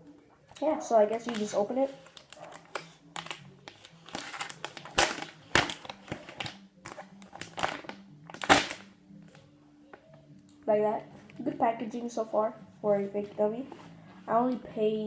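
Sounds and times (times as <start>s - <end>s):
packaging rustling and crinkling: 1.1s - 8.8s.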